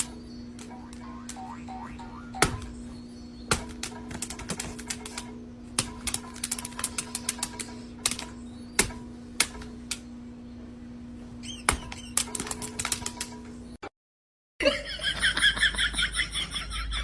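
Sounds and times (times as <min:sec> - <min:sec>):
steady low hum: 0:00.0 - 0:13.8
sharp clicks and taps: 0:03.5 - 0:10.0.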